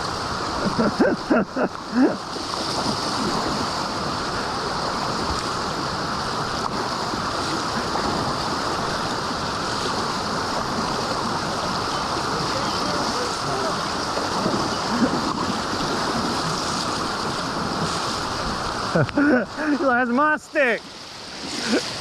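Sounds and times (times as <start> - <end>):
waterfall rushing: 0.0 - 22.0.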